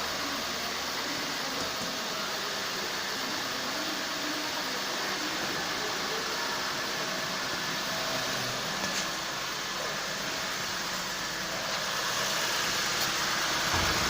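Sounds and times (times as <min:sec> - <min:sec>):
car engine idling: 0:04.3 - 0:14.0.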